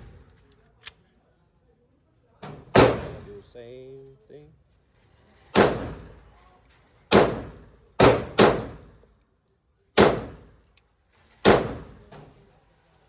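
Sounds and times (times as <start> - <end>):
pistol shots: 2.8 - 3.3, 7.1 - 8.9, 10.0 - 10.5, 11.4 - 12.0.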